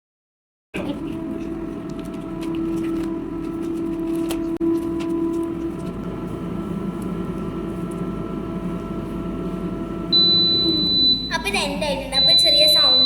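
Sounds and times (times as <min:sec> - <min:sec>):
air fryer humming: 0:00.8 - 0:13.0
high electronic beep: 0:10.2 - 0:11.5, 0:12.1 - 0:13.0.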